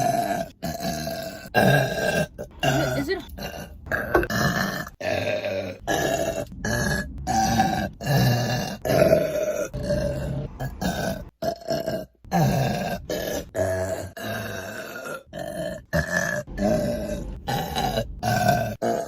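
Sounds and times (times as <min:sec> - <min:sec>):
woman burping: 0:02.6 - 0:04.4.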